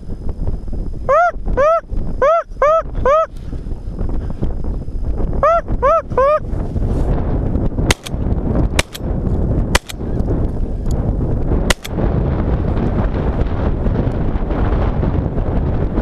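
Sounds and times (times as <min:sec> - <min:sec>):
wind noise on microphone: 0:00.0 - 0:16.0
goose calling: 0:01.1 - 0:03.3
shotgun shots: 0:07.9 - 0:09.1, 0:09.8 - 0:10.1, 0:11.7 - 0:12.0.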